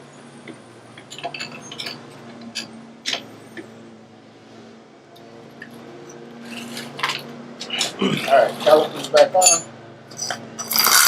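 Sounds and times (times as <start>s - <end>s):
steady low hum: 0.0s - 11.0s
metallic clinks of hand tools: 8.9s - 11.0s.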